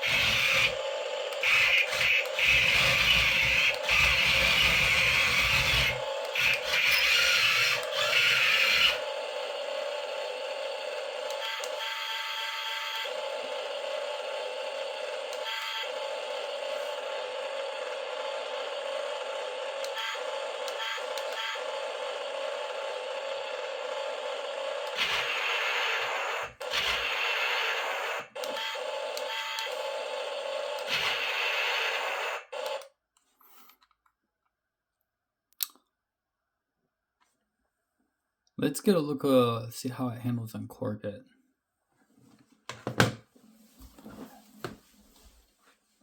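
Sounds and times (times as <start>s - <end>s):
toy cannon firing blasts: 0.0s - 12.0s, 13.0s - 32.8s
toy tank engine rumble: 0.0s - 32.9s
click: 32.6s - 32.9s, 35.5s - 35.9s.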